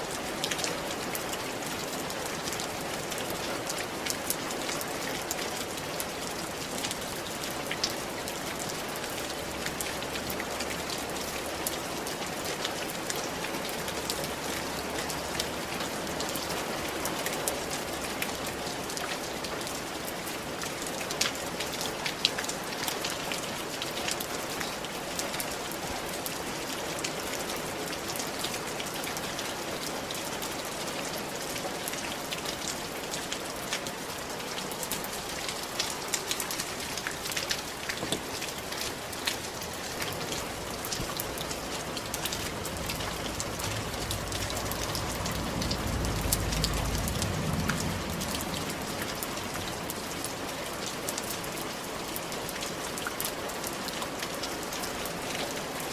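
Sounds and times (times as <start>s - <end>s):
rain on a tiled roof: 0.0s - 55.9s
low rumble: 41.9s - 49.8s.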